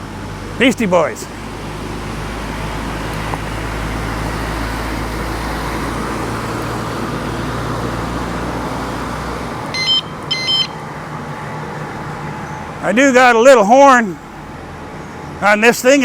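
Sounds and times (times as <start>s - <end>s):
traffic and road noise: 0.0s - 16.0s
bicycle horn beeps: 9.7s - 10.8s.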